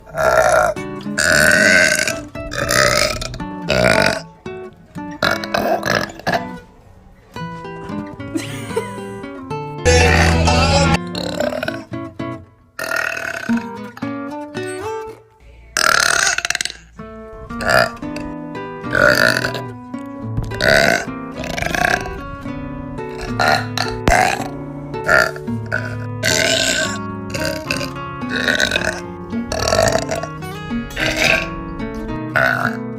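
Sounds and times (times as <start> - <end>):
background music: 0.0 - 6.4, 8.3 - 12.6, 17.0 - 32.9
girl burping loudly: 0.1 - 4.3, 9.9 - 11.9, 15.8 - 16.9, 17.6 - 18.3, 18.9 - 19.7, 20.6 - 22.2, 23.1 - 32.9
girl burping: 9.9 - 11.8, 30.9 - 31.6.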